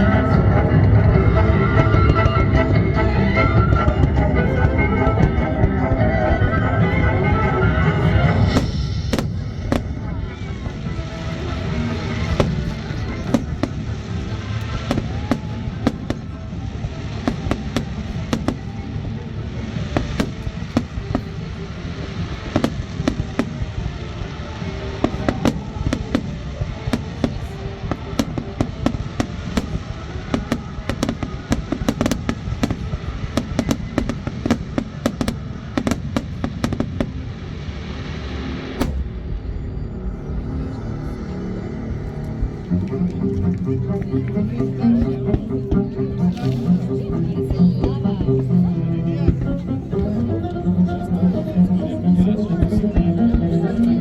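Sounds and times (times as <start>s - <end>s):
music: 0.0s - 54.0s
fireworks bangs and crackles: 5.2s - 40.0s.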